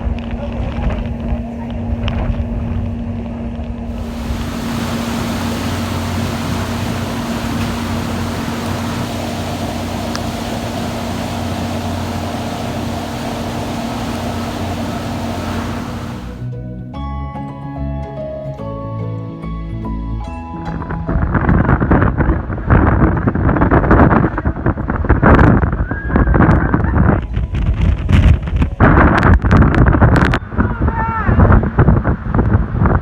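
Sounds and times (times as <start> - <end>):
boat engine droning: 3.9 - 16.5
rushing wind and water: 3.9 - 16.5
music: 16.4 - 21.9.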